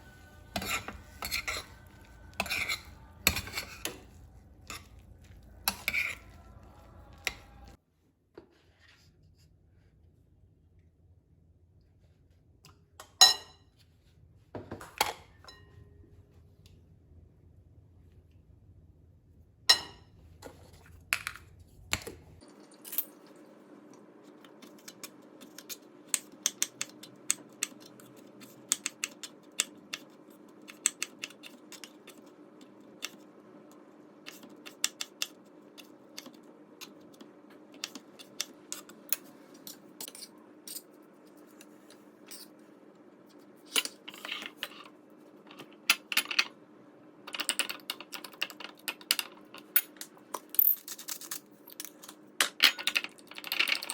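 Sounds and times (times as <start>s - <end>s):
steady low hum: 0.0s - 7.8s
utensils and dishes clinking: 0.0s - 7.8s, 37.8s - 41.0s, 43.6s - 44.9s, 47.3s - 53.9s.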